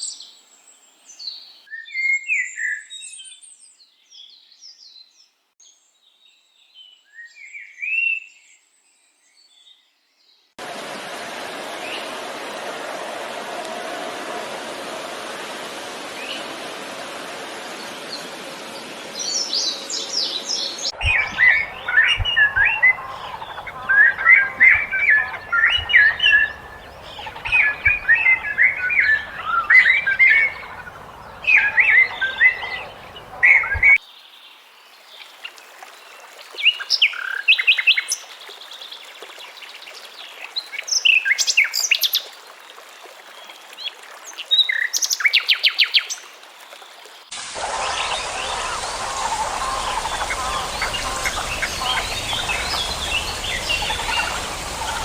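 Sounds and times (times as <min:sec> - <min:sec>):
steady rushing noise: 0:10.6 - 0:19.2, 0:21.0 - 0:34.0, 0:47.3 - 0:55.0
birds chirping: 0:17.7 - 0:34.0, 0:47.3 - 0:55.0
bird trill: 0:21.0 - 0:34.0, 0:47.6 - 0:55.0.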